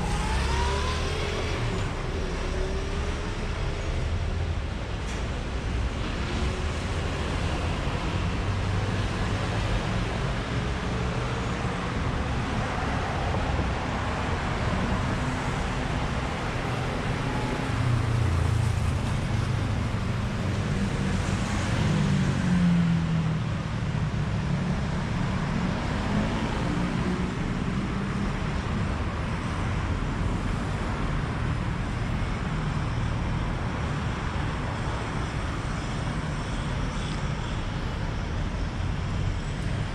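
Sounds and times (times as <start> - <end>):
louder vehicle engine: 0.0 - 23.7
busy road traffic rumble: 0.0 - 39.9.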